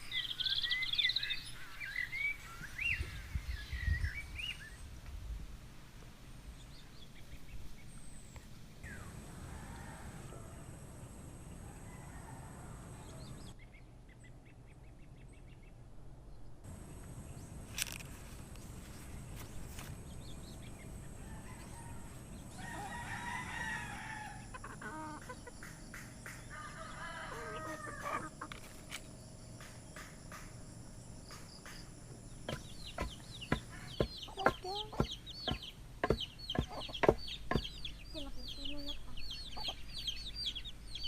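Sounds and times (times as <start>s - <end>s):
rooster crowing: 9.2s - 13.5s, 21.2s - 25.3s, 26.5s - 28.4s
hens clucking: 20.4s - 28.9s, 32.5s - 40.0s.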